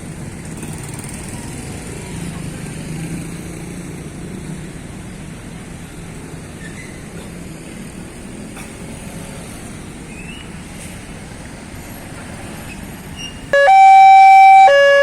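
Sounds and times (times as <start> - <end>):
street traffic noise: 0.0 - 15.0
two-tone hi-lo siren: 13.6 - 15.0.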